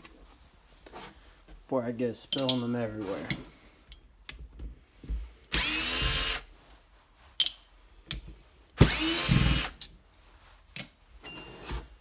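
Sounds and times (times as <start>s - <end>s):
cordless drill motor running: 5.5s - 6.4s, 8.8s - 9.8s.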